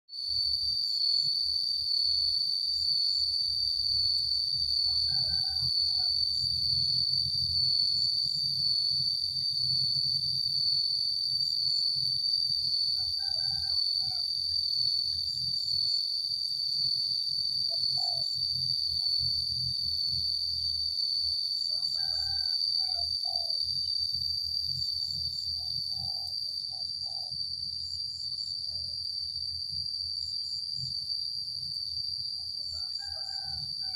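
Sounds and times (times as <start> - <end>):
cicadas droning: 0.1 - 33.9
rooster crowing: 4.7 - 6.5, 13.0 - 14.4, 21.6 - 23.6, 32.6 - 33.9.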